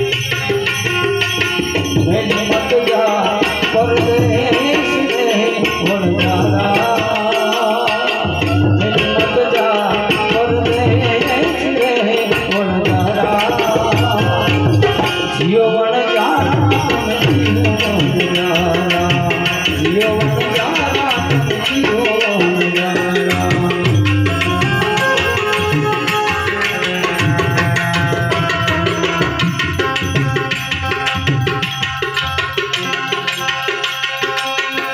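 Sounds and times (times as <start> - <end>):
tabla drumming: 0.0 - 34.9
wavering melody line: 16.1 - 34.9.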